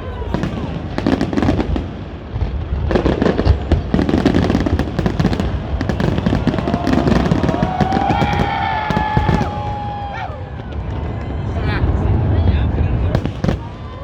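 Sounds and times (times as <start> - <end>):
fireworks bangs and crackles: 0.0 - 14.0.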